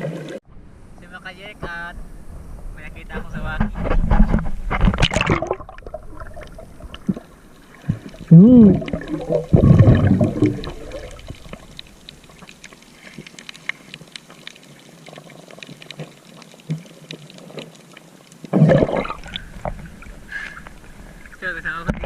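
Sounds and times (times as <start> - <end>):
faint crackling: 1.0 - 22.0
water sloshing and splashing: 3.7 - 22.0.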